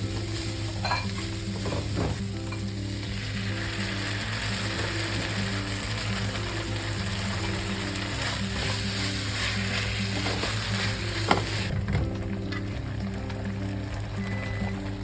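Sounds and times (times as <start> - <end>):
food sizzling in a pan: 0.0 - 11.7
background music: 0.0 - 15.0.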